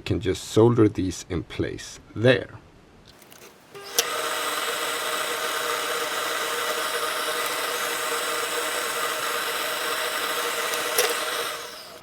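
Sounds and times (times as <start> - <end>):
electric fan motor whirring: 3.3 - 12.0.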